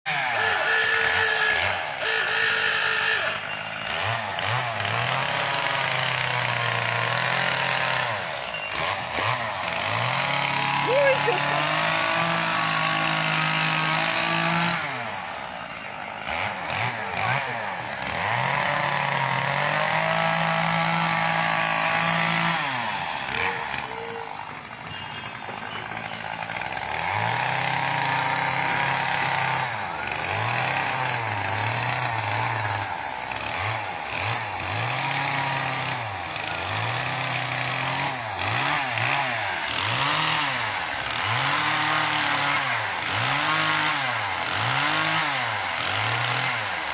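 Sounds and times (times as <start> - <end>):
chainsaw carving wood: 0.0 - 46.9.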